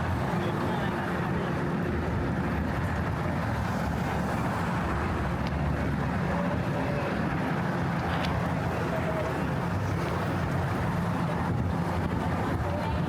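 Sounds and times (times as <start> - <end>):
city street traffic rumble: 0.0 - 13.0
wind on microphone: 9.5 - 13.0.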